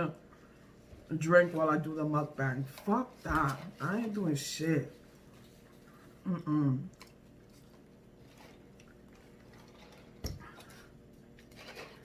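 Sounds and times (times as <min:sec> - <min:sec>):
chewing and mouth smacks: 0:06.9 - 0:12.0.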